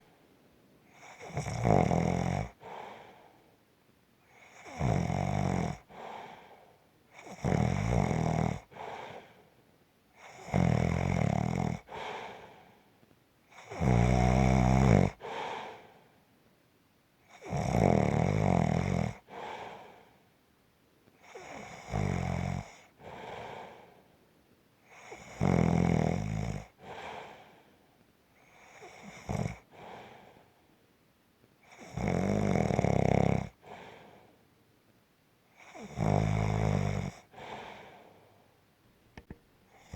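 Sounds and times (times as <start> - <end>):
person snoring: 1.0 - 2.9, 4.4 - 6.2, 7.2 - 9.2, 10.2 - 12.5, 13.6 - 15.8, 17.4 - 19.8, 21.3 - 23.8, 24.9 - 27.4, 28.6 - 30.1, 35.6 - 38.0.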